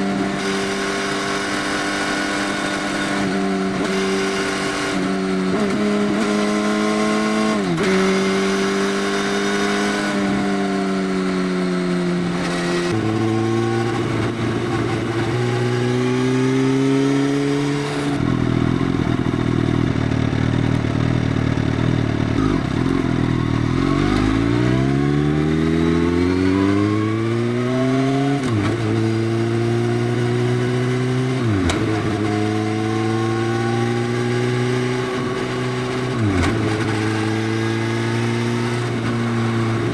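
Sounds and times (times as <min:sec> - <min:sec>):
motorcycle accelerating and shifting gears: 0:00.0 - 0:39.9.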